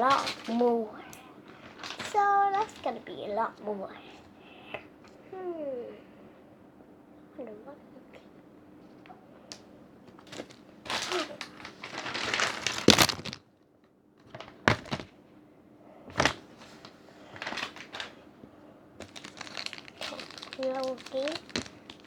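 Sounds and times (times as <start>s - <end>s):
crinkly plastic rustling: 0.0s - 3.5s, 10.1s - 13.5s, 14.2s - 15.1s, 16.1s - 18.2s, 19.0s - 22.0s
light crackling: 19.0s - 22.0s.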